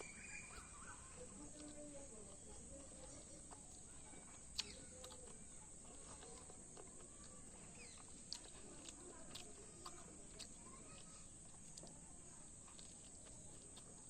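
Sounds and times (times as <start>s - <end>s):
mouth clicks and smacks: 3.7s - 5.4s.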